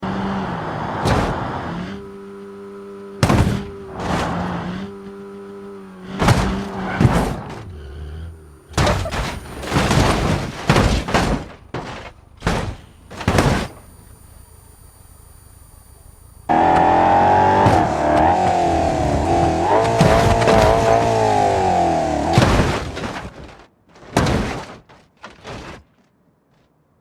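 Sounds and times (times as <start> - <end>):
steady low hum: 1.3 - 16.8
heavy knocks and thuds: 3.2 - 4.6, 6.1 - 7.7, 8.7 - 13.8, 19.8 - 21.3, 22.2 - 25.9.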